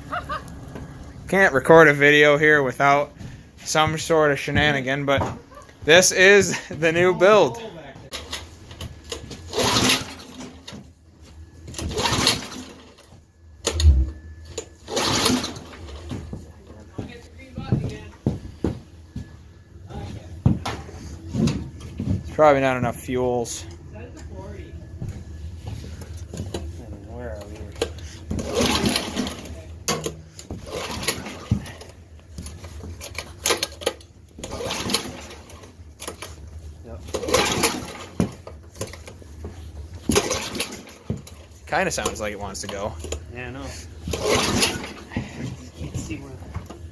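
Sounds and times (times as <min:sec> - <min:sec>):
recoil pull cord rattling whir: 0:08.1 - 0:10.8, 0:11.6 - 0:16.3, 0:27.4 - 0:36.4, 0:37.1 - 0:39.2, 0:40.0 - 0:43.2, 0:44.0 - 0:45.3
engine turning over: 0:09.5 - 0:10.7, 0:11.7 - 0:13.0, 0:13.6 - 0:16.1, 0:27.9 - 0:29.5, 0:30.6 - 0:31.9, 0:34.4 - 0:36.2, 0:37.2 - 0:38.2, 0:40.1 - 0:41.0, 0:44.1 - 0:45.2
heavy thump: 0:13.7 - 0:14.3.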